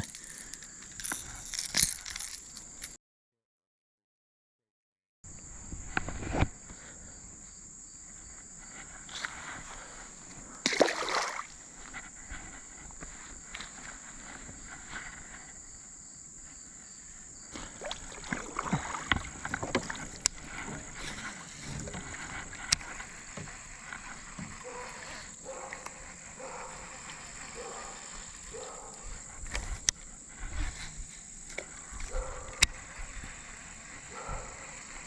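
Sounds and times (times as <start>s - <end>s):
water sloshing: 10.6s - 11.7s, 17.6s - 28.9s
kayak hull knocks: 17.6s - 22.6s.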